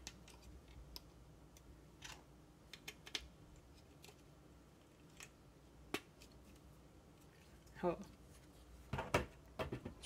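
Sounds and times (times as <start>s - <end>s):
plastic toy bricks clicking: 2.0s - 3.3s.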